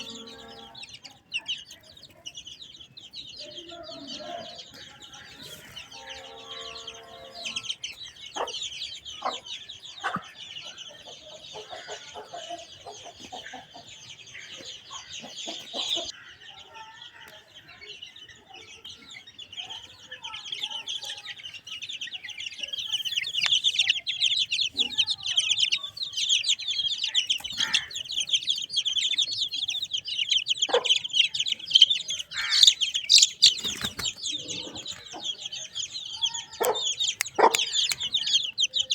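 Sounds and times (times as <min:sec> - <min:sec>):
hen clucking: 0:00.0 - 0:01.5, 0:04.0 - 0:16.2, 0:22.1 - 0:38.9
chicks cheeping: 0:00.0 - 0:38.9.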